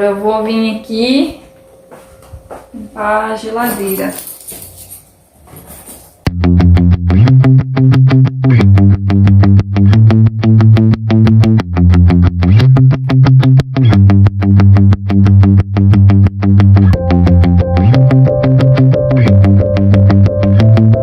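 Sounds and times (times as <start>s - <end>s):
music with fast beat: 16.9s - 21.0s.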